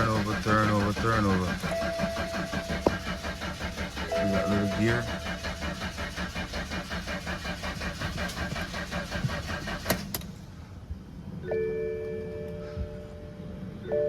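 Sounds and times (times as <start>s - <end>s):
engine cranking without starting: 0.0s - 10.6s.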